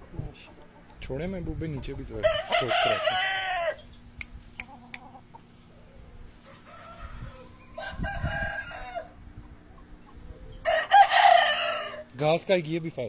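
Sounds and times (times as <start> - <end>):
rooster crowing: 2.2 - 3.8, 6.4 - 9.2, 10.6 - 12.1.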